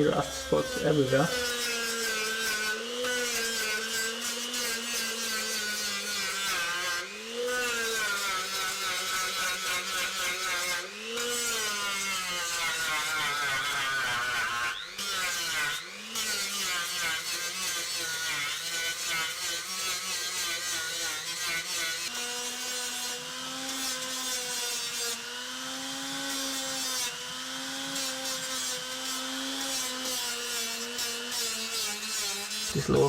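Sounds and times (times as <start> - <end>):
grinder motor whine: 0.0 - 6.3
grinding hiss on metal: 0.0 - 7.0, 27.9 - 33.0.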